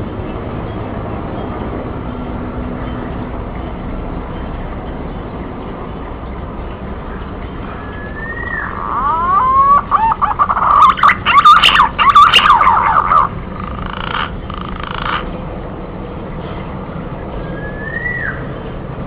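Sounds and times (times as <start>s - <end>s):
bird whistling calls: 7.7s - 15.2s, 17.4s - 18.6s.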